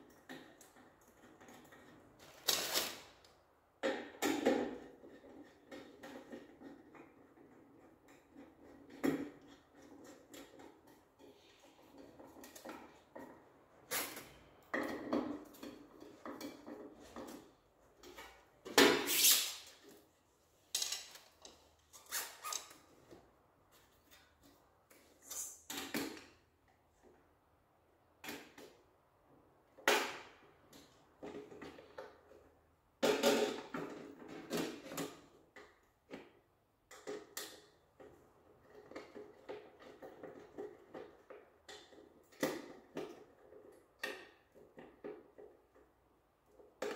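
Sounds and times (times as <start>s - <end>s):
hard parts knocking and rattling: 3.7s - 19.1s, 20.6s - 21.9s.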